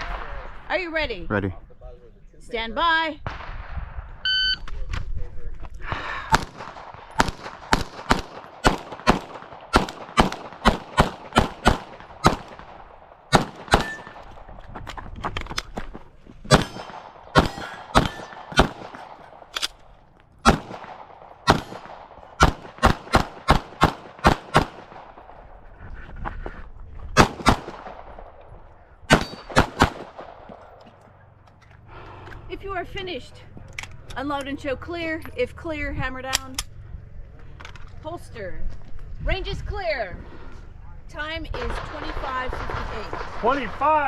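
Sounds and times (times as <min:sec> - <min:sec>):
pistol shots: 0:06.3 - 0:14.6, 0:16.5 - 0:25.5, 0:27.2 - 0:28.5, 0:29.1 - 0:30.8.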